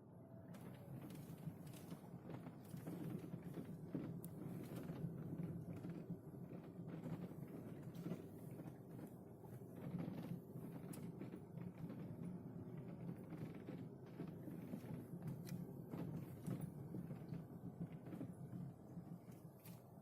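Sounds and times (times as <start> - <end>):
low cabin rumble: 0.0 - 20.0.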